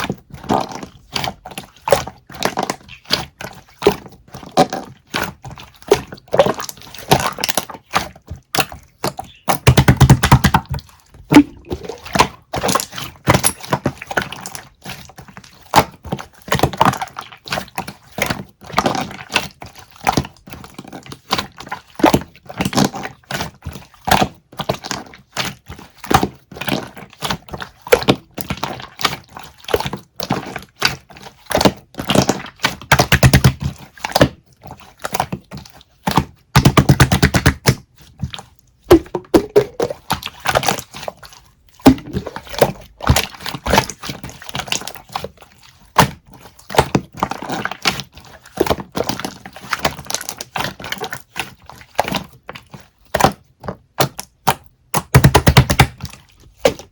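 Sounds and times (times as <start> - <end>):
taps clicks and knocks: 38.9 - 40.0, 41.9 - 42.4.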